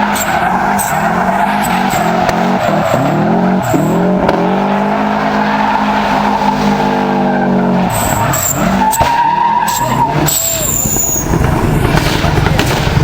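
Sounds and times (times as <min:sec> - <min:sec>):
tyres squealing: 0:00.0 - 0:12.6
car engine revving: 0:00.0 - 0:13.0.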